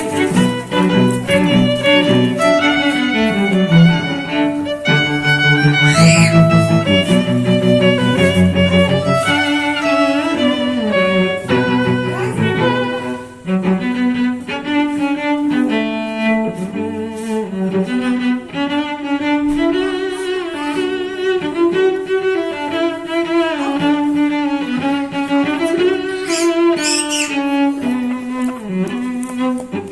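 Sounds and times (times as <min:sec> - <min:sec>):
cello and violin playing: 0:00.0 - 0:29.9.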